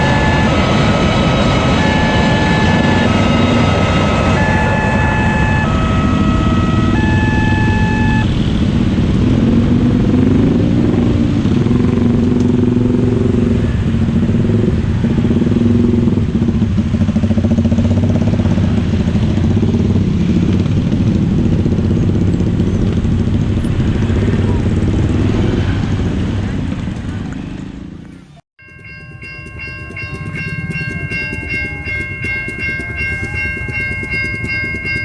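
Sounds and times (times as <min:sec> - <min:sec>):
level crossing warning tones: 0:00.0 - 0:08.4, 0:28.6 - 0:35.0
motorcycle engine: 0:00.0 - 0:25.8, 0:28.7 - 0:35.0
traffic engines: 0:00.0 - 0:35.0.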